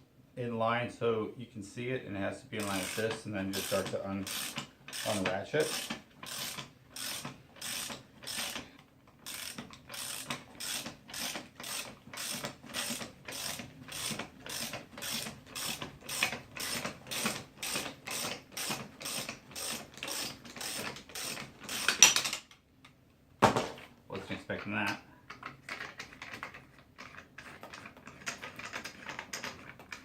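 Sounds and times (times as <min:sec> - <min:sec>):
ratchet clicking: 0:02.6 - 0:22.4.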